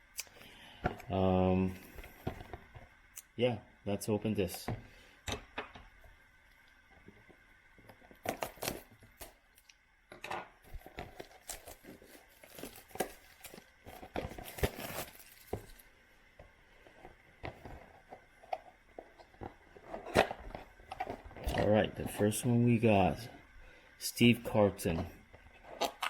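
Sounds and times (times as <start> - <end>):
wrapping tearing and crinkling: 8.2 - 9.4, 10.7 - 15.9
cardboard clicks and rustles: 10.6 - 15.9.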